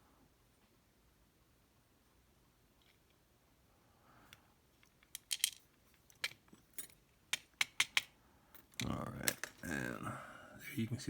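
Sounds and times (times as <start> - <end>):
small metal parts clicking: 4.8 - 9.6.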